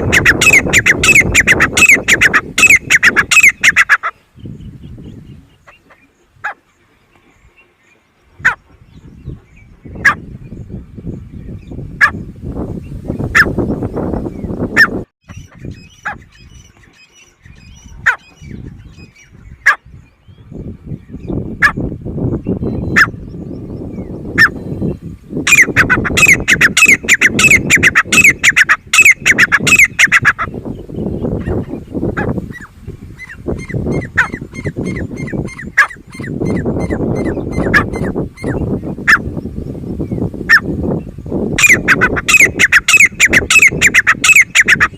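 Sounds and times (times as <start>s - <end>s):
francolin calling: 0.0s - 6.6s, 25.5s - 39.3s, 41.6s - 44.9s.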